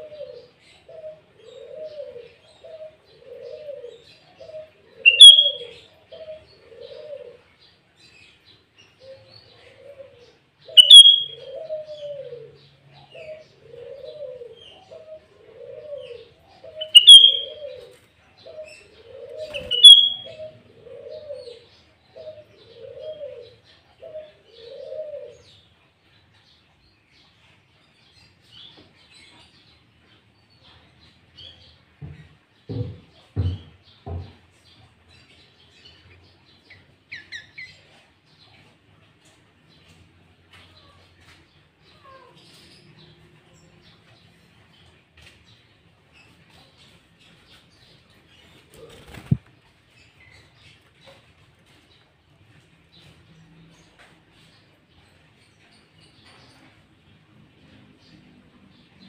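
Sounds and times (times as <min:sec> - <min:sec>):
low repeated bird call: 0:04.5 - 0:07.2, 0:10.7 - 0:12.6, 0:13.8 - 0:17.9, 0:18.5 - 0:21.6
bird sharp high calls: 0:05.0 - 0:05.7, 0:10.7 - 0:11.5, 0:16.8 - 0:17.7, 0:19.5 - 0:20.5.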